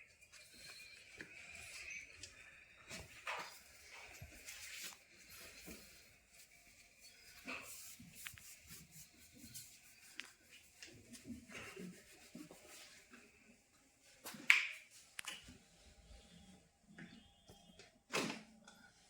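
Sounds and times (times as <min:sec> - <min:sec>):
soft rustles: 0:00.2 - 0:16.3
hands rubbing on back: 0:03.7 - 0:13.4.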